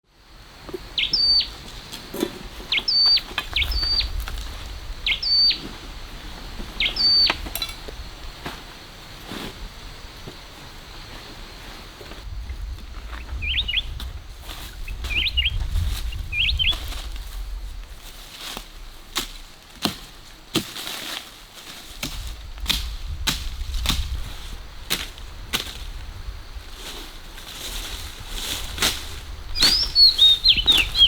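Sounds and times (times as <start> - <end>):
small bird chirping: 0.9 - 1.6, 2.7 - 4.2, 5.0 - 5.6, 6.8 - 7.4, 13.2 - 14.0, 14.8 - 16.9, 29.5 - 31.0.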